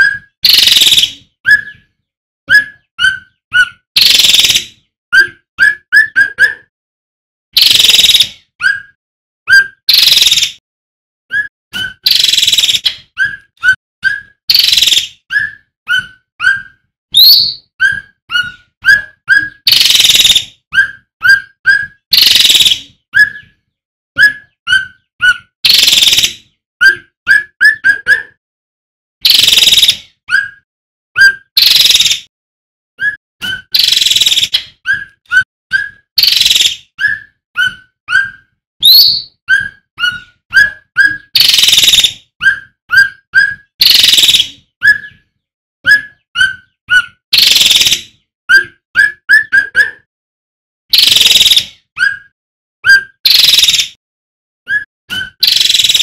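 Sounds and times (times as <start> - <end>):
songbird singing whistled notes: 0.0 - 1.9, 11.3 - 23.6, 33.0 - 45.2, 45.9 - 49.8, 54.7 - 56.0.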